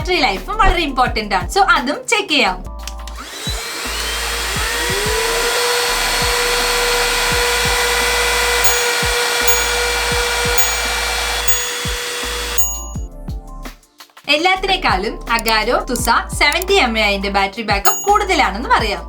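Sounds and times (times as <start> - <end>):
handheld vacuum cleaner running: 3.1 - 13.0.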